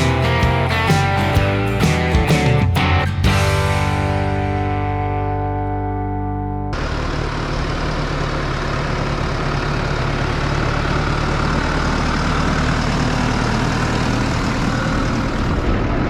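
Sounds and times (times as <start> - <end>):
engine running: 0.0 - 16.0
broad rushing noise: 14.1 - 16.0.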